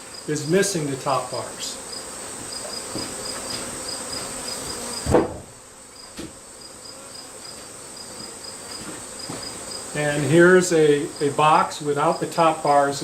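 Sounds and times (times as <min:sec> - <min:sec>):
constant high hiss: 0:00.0 - 0:13.0
insects chirping: 0:00.0 - 0:13.0
loud thump: 0:05.0 - 0:06.4.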